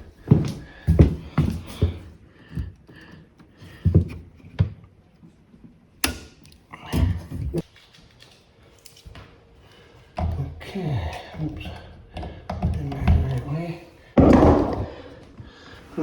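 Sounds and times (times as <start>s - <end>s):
thuds and knocks: 14.2s - 15.1s.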